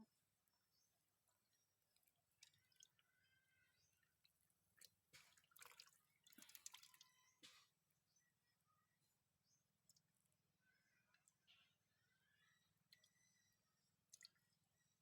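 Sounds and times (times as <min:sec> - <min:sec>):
water dripping and splashing: 0:01.9 - 0:03.0, 0:04.0 - 0:07.7.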